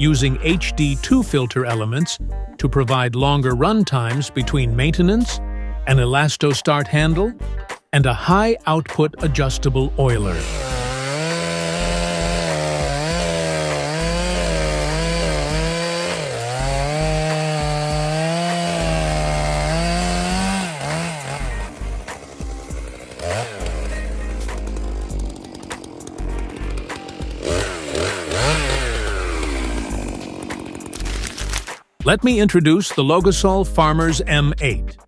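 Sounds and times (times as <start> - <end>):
background music: 0.0 - 35.0
chainsaw cutting wood: 10.0 - 31.9.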